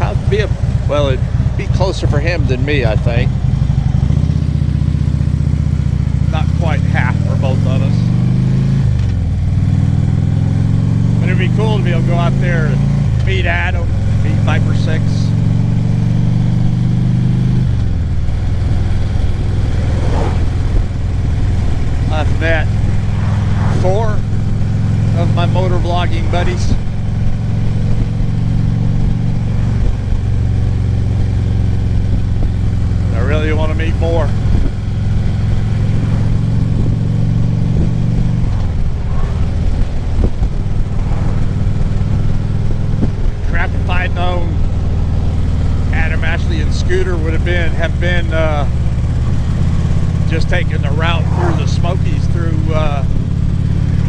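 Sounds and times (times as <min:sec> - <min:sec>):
motorcycle engine running: 0:00.0 - 0:54.0
road noise: 0:00.0 - 0:54.0
wind noise: 0:17.8 - 0:30.7, 0:36.5 - 0:43.7.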